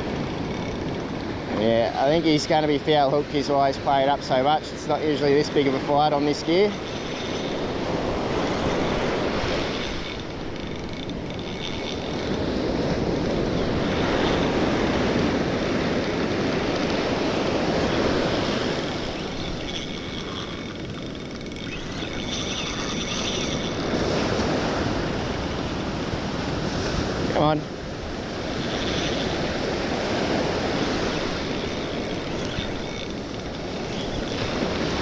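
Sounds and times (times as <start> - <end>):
ocean surf breaking on beach: 25.9 - 28.6.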